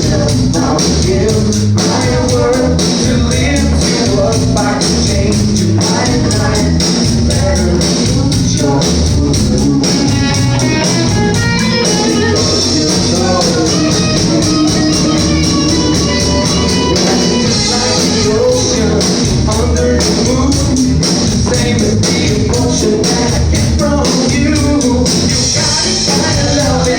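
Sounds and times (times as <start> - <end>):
percussion beat: 0.0 - 26.9
person singing: 0.0 - 26.9
electric guitar: 9.8 - 19.4.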